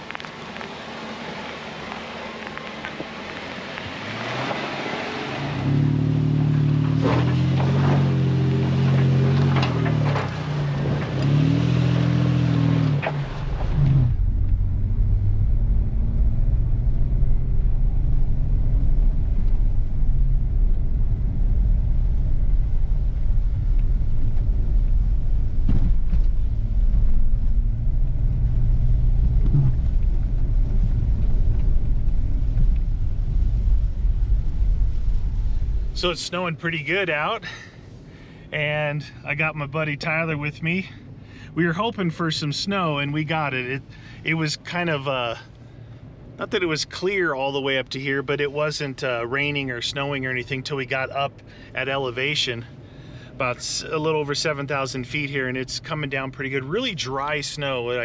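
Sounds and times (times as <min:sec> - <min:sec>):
vehicle driving rumble: 0:00.0 - 0:58.0
vehicle engine revving: 0:01.0 - 0:39.6.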